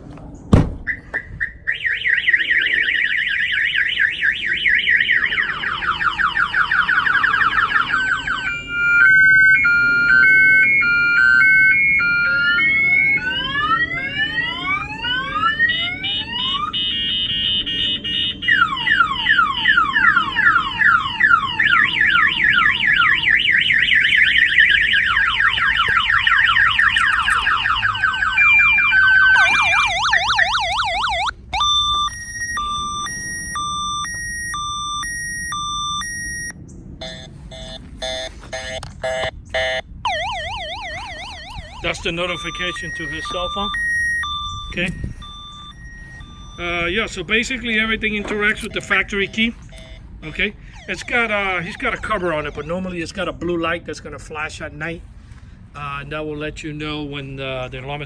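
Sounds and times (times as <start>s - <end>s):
bang on vehicle glass: 0.5s - 0.9s
car alarm siren: 0.5s - 53.3s.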